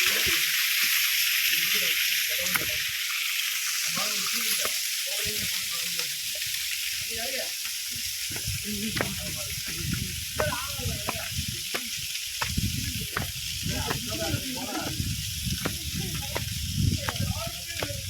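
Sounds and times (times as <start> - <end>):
small waterfall: 0.0 - 18.0
faint distant voices: 7.1 - 18.0.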